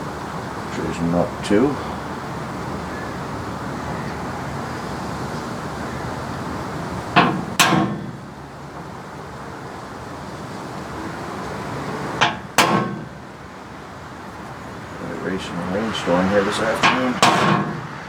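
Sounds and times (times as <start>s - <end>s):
steady background noise: 0.0s - 18.0s
metal-on-metal strikes ringing: 7.2s - 8.2s, 12.2s - 13.2s, 16.7s - 17.9s.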